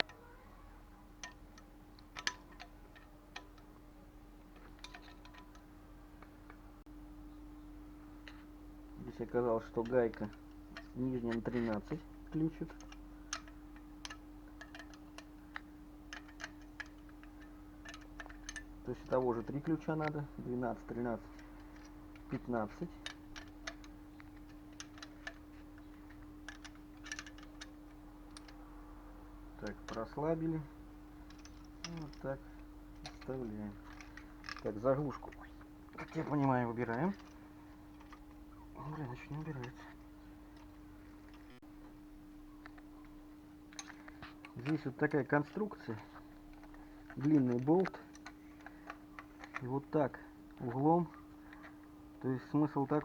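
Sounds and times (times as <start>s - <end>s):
steady low hum: 0.0s - 53.0s
spanner clicking on bolts: 1.1s - 3.8s, 4.5s - 5.7s, 9.1s - 28.7s, 29.6s - 41.6s.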